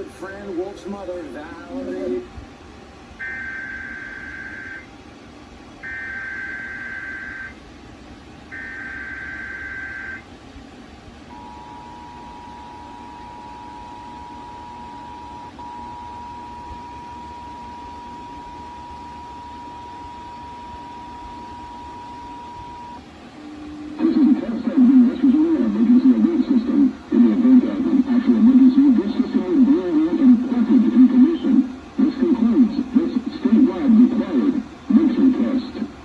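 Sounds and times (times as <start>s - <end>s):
buzzy digital data bursts: 3.2s - 4.8s, 5.8s - 7.6s, 8.6s - 10.2s
two-tone attention signal: 3.2s - 4.9s, 5.8s - 7.6s, 8.5s - 10.2s, 11.3s - 23.0s.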